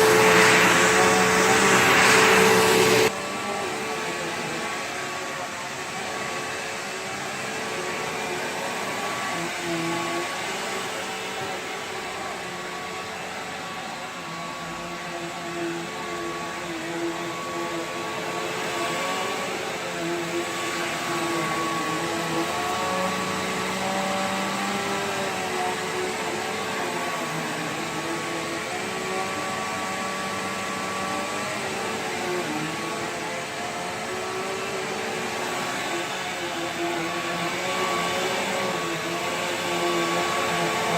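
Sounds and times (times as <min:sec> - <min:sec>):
upright vacuum running: 0:00.0 - 0:40.9.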